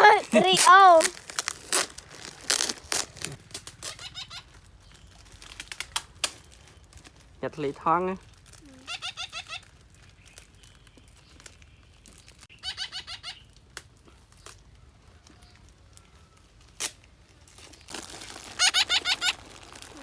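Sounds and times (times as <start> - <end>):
crinkling rustle: 0.0 - 12.5, 13.5 - 20.0
parrots squeaky chirps: 3.8 - 4.6, 8.6 - 9.8, 12.5 - 13.5, 18.2 - 20.0.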